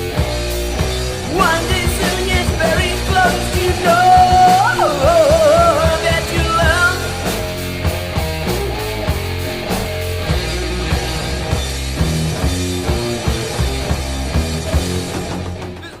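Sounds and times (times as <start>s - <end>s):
rock band with guitar and drums: 0.0s - 16.0s
person singing: 1.2s - 7.4s.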